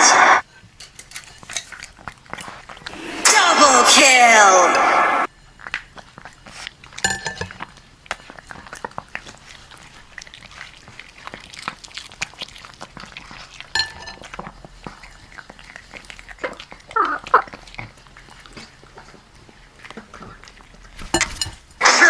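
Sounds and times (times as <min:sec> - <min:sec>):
claws scratching and pecking: 0:05.7 - 0:21.7.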